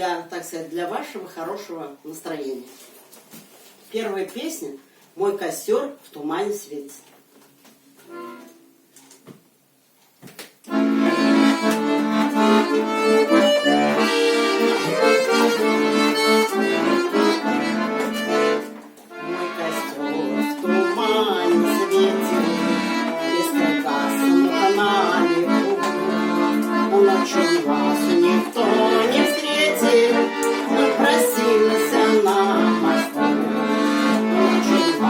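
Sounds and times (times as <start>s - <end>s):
button accordion music: 8.1s - 8.6s, 10.7s - 35.0s.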